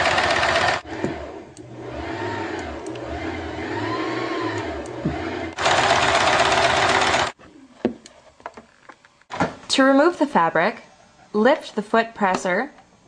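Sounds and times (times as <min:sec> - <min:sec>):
electric sewing machine running: 0:00.0 - 0:07.4.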